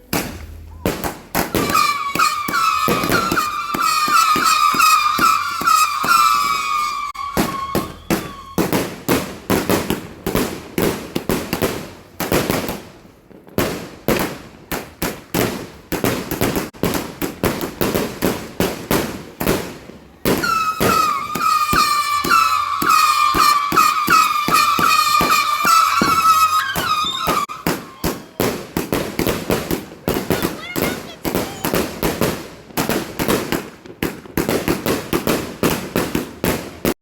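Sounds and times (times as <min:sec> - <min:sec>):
fireworks pops and bangs: 0:00.0 - 0:37.0.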